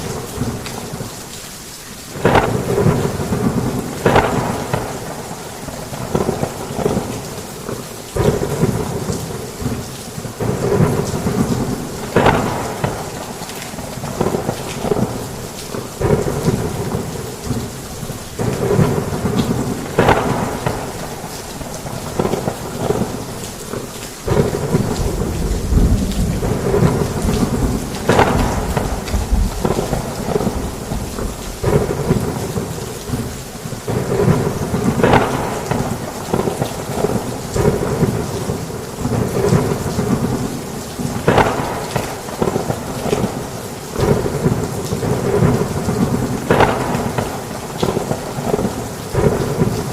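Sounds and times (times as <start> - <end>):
heavy rain on a roof: 0.0 - 49.9
thunder rumbling: 2.1 - 49.9.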